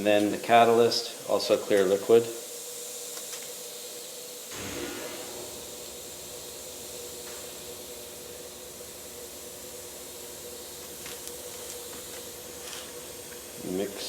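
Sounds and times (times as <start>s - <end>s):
background hiss: 0.0s - 14.0s.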